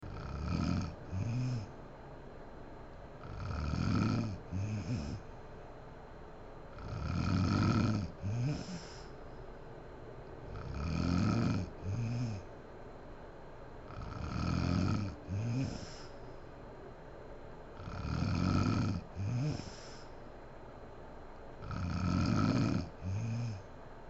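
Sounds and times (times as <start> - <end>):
woman snoring: 0.0 - 1.8, 3.2 - 5.3, 6.7 - 9.1, 10.5 - 12.5, 13.9 - 16.1, 17.8 - 20.1, 21.6 - 23.7
wavering breath out: 8.2 - 9.4, 15.6 - 16.5, 19.3 - 20.3.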